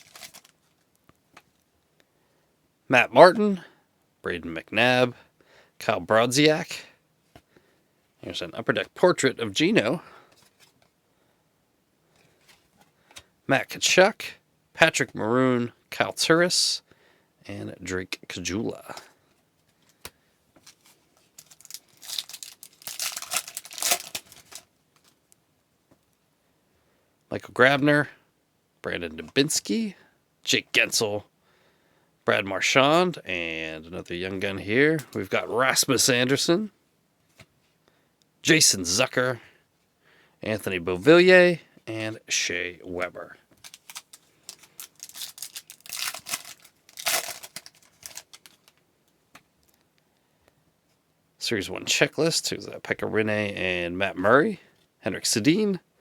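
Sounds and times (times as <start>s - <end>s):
foil wrapper tearing and crinkling: 0.0s - 0.6s, 20.7s - 25.1s, 43.6s - 48.8s.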